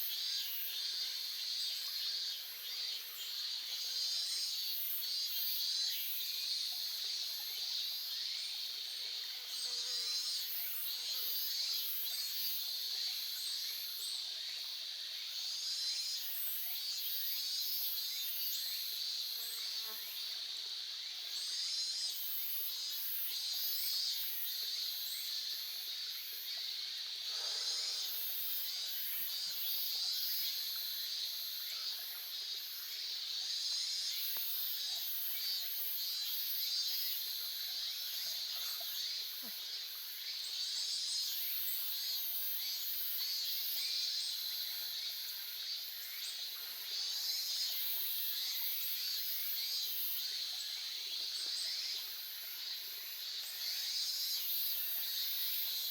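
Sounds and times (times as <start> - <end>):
insects chirping: 16.3 - 55.9.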